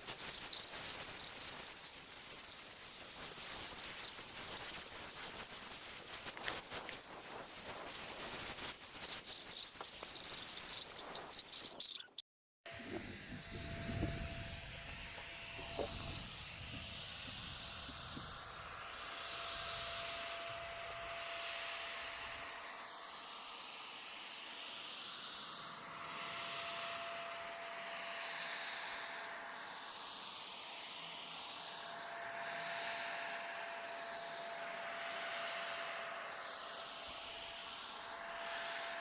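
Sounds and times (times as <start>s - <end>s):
motor whine: 0.0s - 12.1s, 12.7s - 23.5s
paint spray gun hissing: 0.0s - 12.1s.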